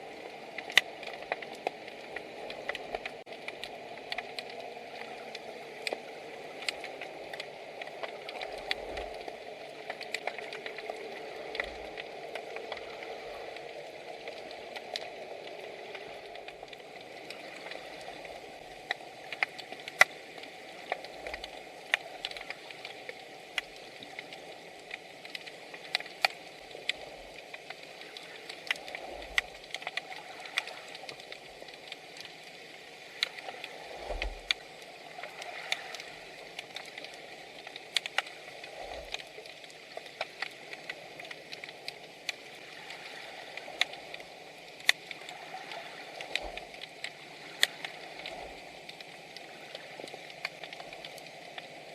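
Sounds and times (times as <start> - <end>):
muffled underwater hiss: 0.0 - 51.9
sharp clicks and crackles: 0.0 - 51.9.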